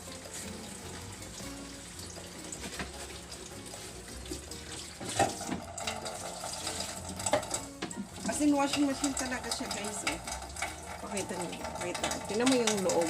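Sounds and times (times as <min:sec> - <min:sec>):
water running from a tap: 0:00.0 - 0:13.0.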